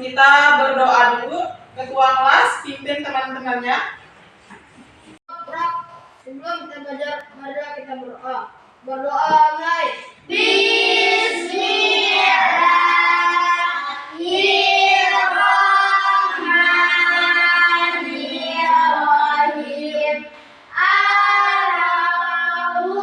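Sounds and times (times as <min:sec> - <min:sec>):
children chanting a prayer: 0:08.9 - 0:23.0.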